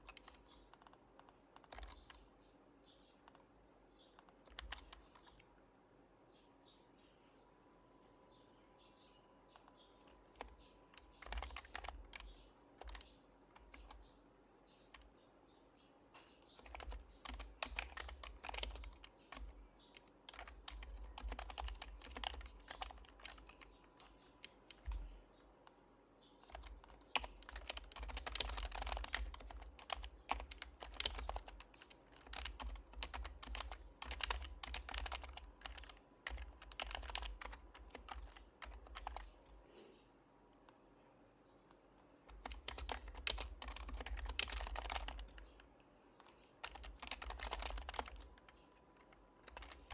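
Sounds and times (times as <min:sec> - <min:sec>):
soft keyboard typing: 0:00.0 - 0:05.5, 0:09.5 - 0:15.3, 0:16.2 - 0:25.8, 0:26.4 - 0:39.6, 0:41.7 - 0:49.9.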